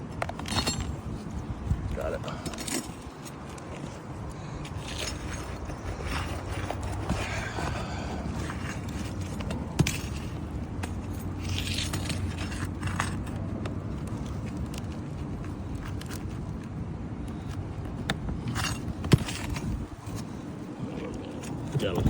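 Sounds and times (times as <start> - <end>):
metal tool scraping under shingles: 0.2 - 1.4, 2.1 - 13.5, 18.4 - 20.4.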